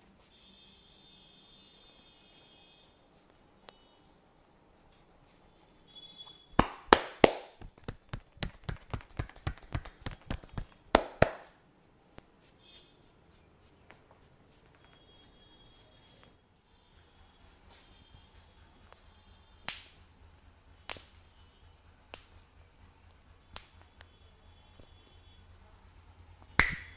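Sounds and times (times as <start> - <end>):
hands slapping during massage: 6.6 - 11.6, 19.6 - 20.0, 20.9 - 21.3, 22.1 - 22.4, 23.5 - 23.9, 26.6 - 26.9.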